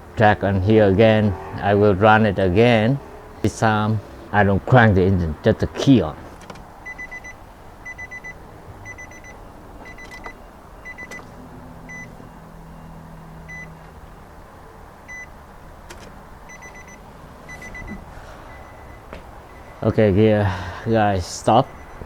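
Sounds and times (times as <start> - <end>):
fuel pump humming: 6.1 - 19.8
car warning chime beeping: 6.7 - 14.0, 15.0 - 15.4, 16.4 - 20.2, 21.5 - 22.0.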